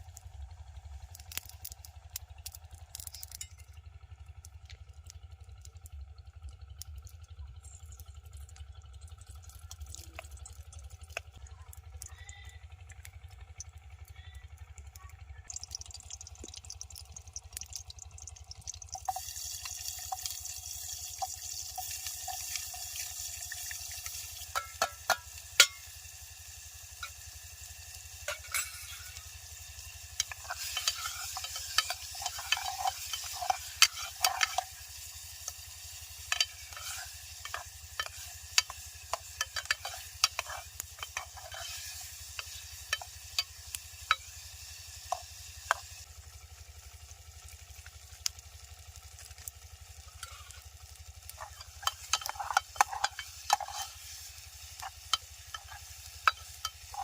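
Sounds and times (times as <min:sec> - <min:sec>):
food sizzling in a pan: 0:15.5 - 0:57.0
utensil clinking against pan: 0:24.4 - 0:25.9, 0:28.3 - 0:29.1, 0:30.2 - 0:34.8, 0:36.2 - 0:44.3, 0:51.4 - 0:54.0, 0:54.8 - 0:57.0.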